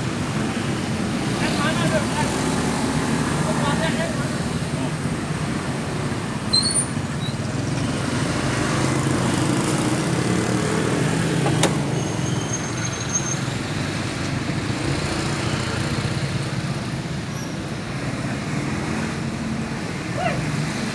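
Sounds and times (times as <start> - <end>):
scooter engine running: 7.8 - 12.4.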